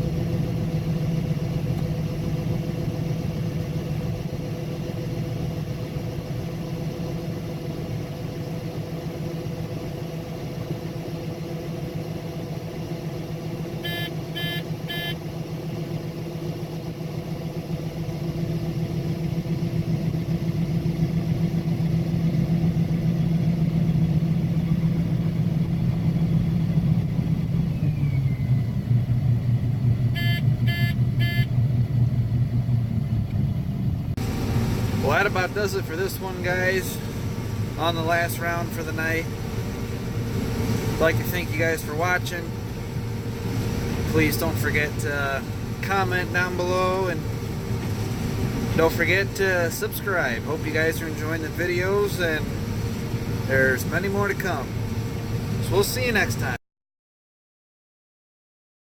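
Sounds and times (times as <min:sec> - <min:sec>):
combine harvester drone: 0:00.0 - 0:56.6
triple electronic beep: 0:13.8 - 0:15.2, 0:30.2 - 0:31.5.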